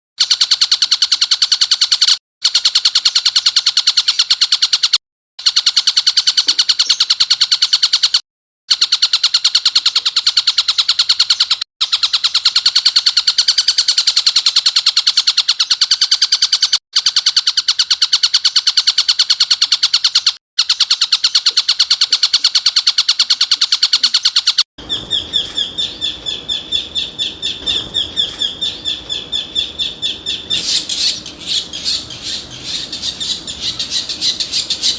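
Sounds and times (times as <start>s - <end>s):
bird chattering call: 5.5s - 34.9s
songbird buzzing trill: 17.5s - 34.9s.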